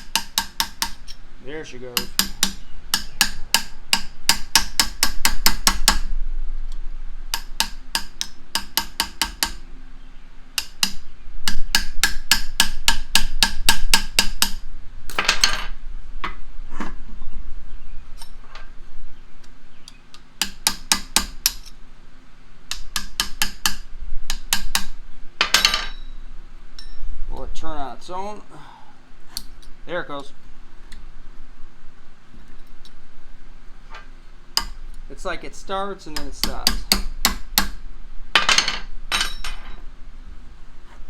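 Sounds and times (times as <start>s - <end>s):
hammer tapping metal punch ringing: 2.0s - 3.7s, 25.4s - 26.2s, 26.8s - 27.0s.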